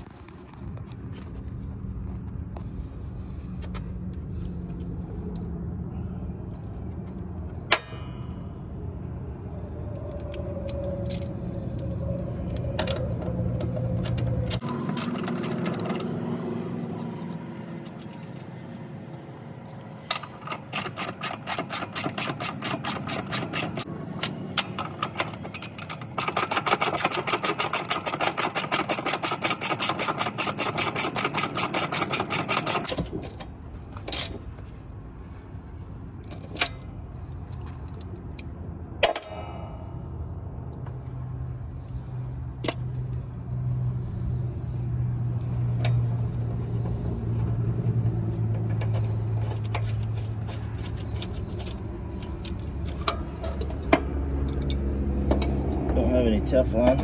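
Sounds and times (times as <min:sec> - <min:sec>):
ratchet wrench clicking: 0:13.8 - 0:16.1, 0:20.1 - 0:33.0.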